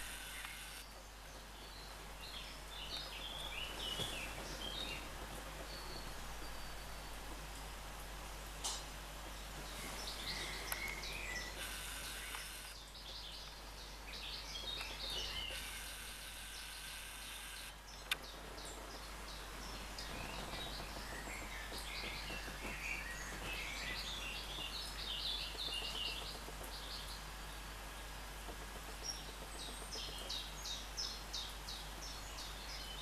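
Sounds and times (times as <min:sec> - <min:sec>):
hiss: 0:00.0 - 0:00.8, 0:11.6 - 0:12.8
steady low hum: 0:00.0 - 0:32.0
small birds chirping: 0:00.0 - 0:33.0.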